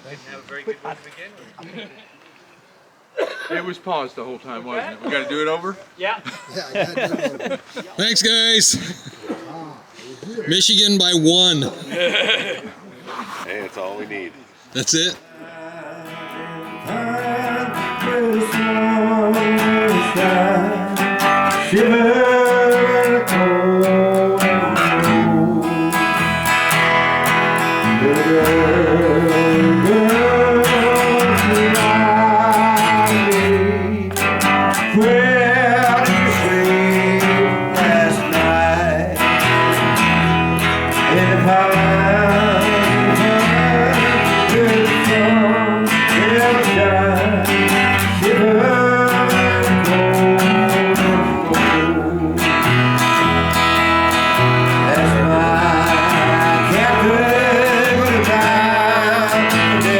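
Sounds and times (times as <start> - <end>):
person singing: 15.3 - 59.9
song with guitar: 15.5 - 59.9.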